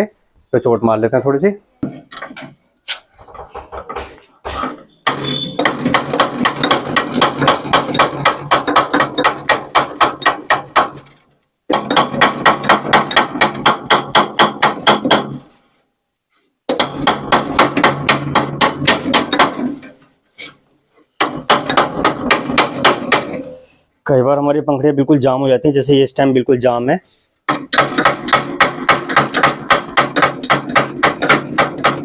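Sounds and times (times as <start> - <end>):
hammer striking metal: 3.9 - 11.1, 16.7 - 19.9, 27.5 - 32.0.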